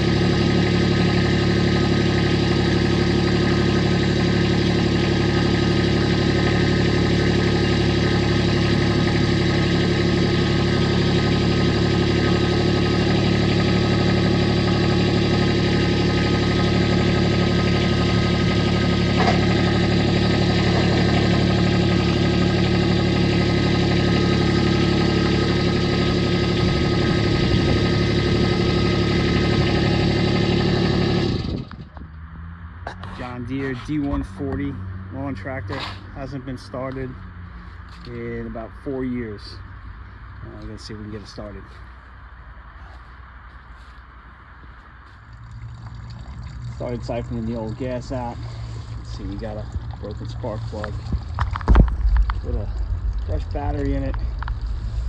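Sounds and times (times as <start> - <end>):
lawn tractor engine running: 0.0 - 32.0, 45.0 - 55.0.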